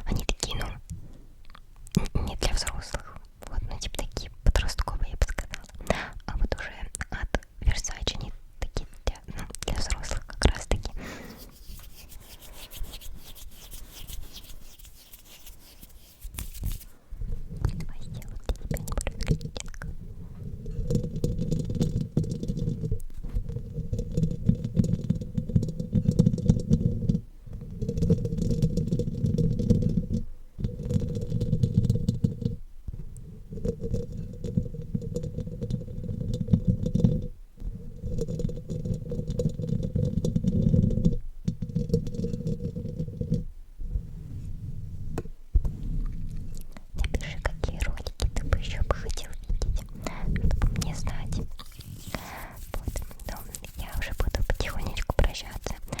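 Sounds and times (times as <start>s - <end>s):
brush scratching across microphone: 9.8s - 17.0s, 47.0s - 56.0s.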